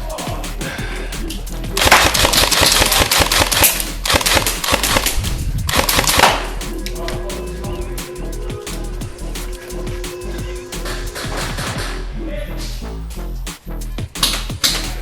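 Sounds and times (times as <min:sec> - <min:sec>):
background music with steady beat: 0:00.0 - 0:15.0
airsoft guns firing full auto: 0:01.8 - 0:06.4.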